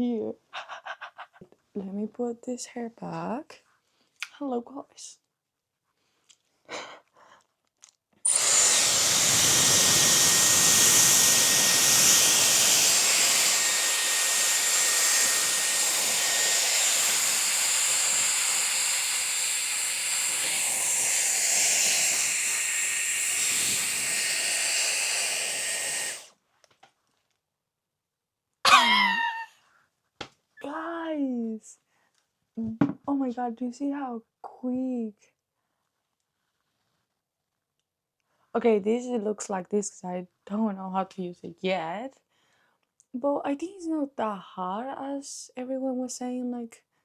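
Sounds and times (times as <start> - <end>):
hair styler blowing air: 8.2 - 26.3, 28.7 - 29.4.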